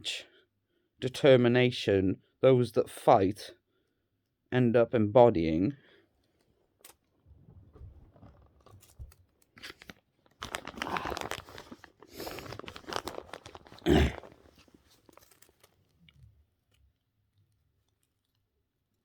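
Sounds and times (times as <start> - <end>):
crinkling and crunching: 6.8 - 18.4.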